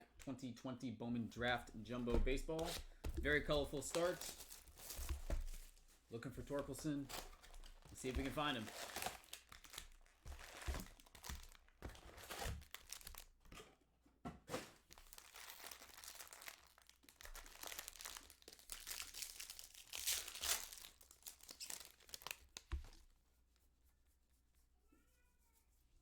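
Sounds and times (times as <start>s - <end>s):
foil wrappers tearing and crinkling: 3.7s - 5.8s, 6.5s - 13.4s, 14.8s - 23.0s.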